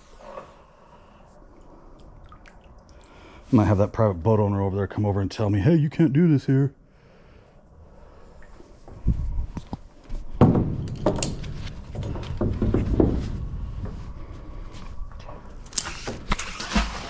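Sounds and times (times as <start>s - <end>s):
handling knocks and rumbling: 8.9s - 17.0s
water splash: 16.3s - 17.0s.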